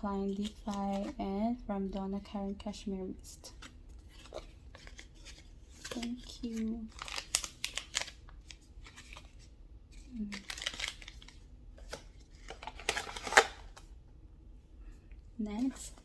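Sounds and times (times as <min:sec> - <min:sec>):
paper and plastic rustling: 0:00.1 - 0:02.0, 0:03.4 - 0:13.9
packaging crackle: 0:04.0 - 0:13.9.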